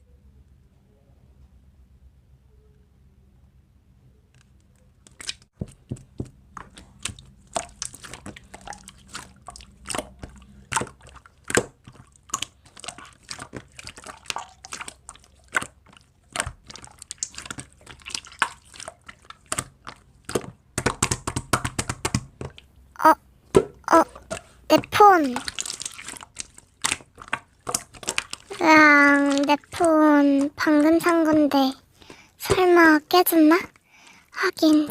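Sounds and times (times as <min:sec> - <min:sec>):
slime crackling and popping: 0:06.6 - 0:22.4, 0:25.3 - 0:31.4.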